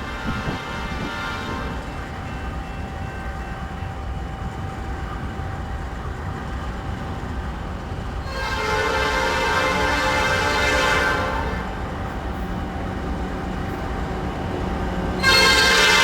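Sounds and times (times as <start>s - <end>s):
train horn blast: 0.0s - 1.8s, 8.2s - 11.8s, 15.2s - 16.0s
freight train diesel rumble: 0.0s - 16.0s.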